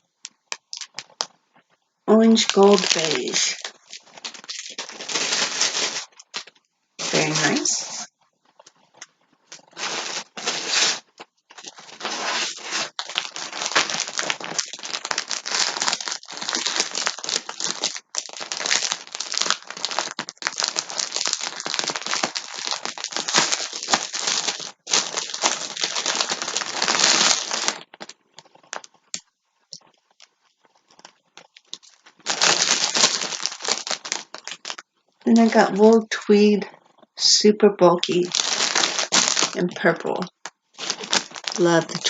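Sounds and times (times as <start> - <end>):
plastic packaging crinkling: 0.0 - 1.3, 2.1 - 37.1, 37.8 - 42.0.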